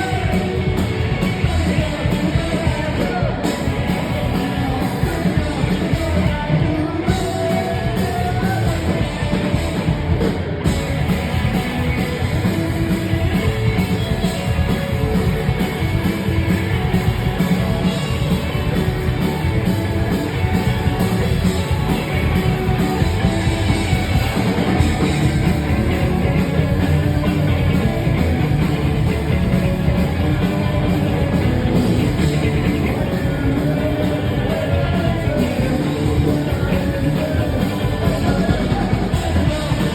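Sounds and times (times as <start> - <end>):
person singing: 0.0 - 9.9, 30.3 - 39.9
drum kit: 0.0 - 39.9
guitar: 0.0 - 39.9.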